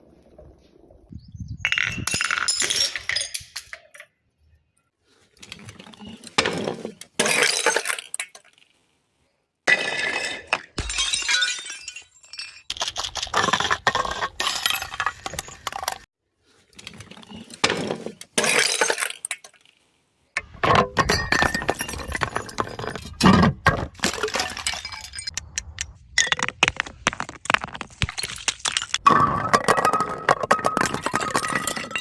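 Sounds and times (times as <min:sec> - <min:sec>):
glass bottles breaking: 0:01.7 - 0:04.0, 0:07.2 - 0:08.4, 0:09.7 - 0:16.1, 0:18.4 - 0:19.5, 0:20.4 - 0:25.4, 0:26.2 - 0:32.0
glass shards clinking: 0:01.7 - 0:04.1, 0:10.8 - 0:12.8, 0:28.6 - 0:32.0.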